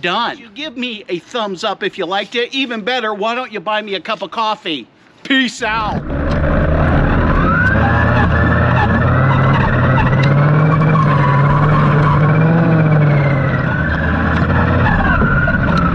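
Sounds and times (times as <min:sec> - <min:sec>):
brush cutter engine high revs: 0:05.8 - 0:15.9.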